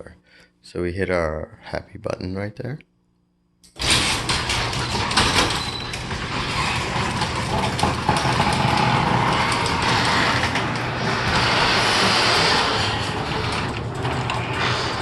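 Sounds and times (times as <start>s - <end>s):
door clicks and rattles: 3.7s - 15.0s
garage door opener running: 3.7s - 15.0s.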